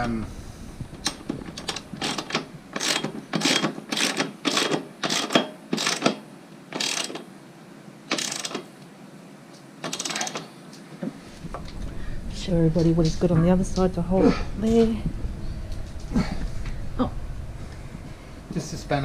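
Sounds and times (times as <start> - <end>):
ratchet wrench clicking: 2.8 - 7.2, 8.1 - 8.6, 9.8 - 10.4.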